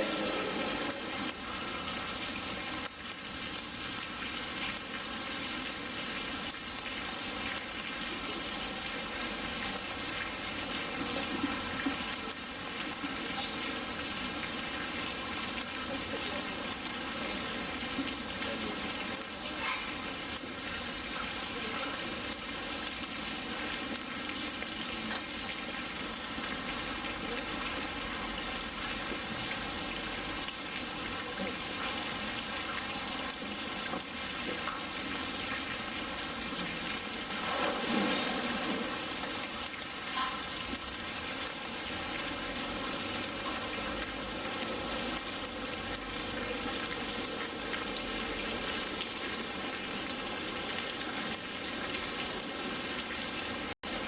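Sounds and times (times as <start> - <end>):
running water rushing: 0.0 - 54.0.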